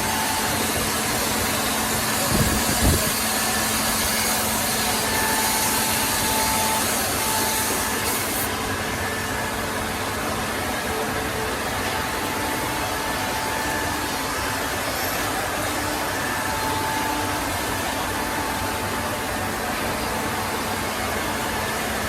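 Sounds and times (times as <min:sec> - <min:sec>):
wood router hiss and whine: 0:00.0 - 0:22.0.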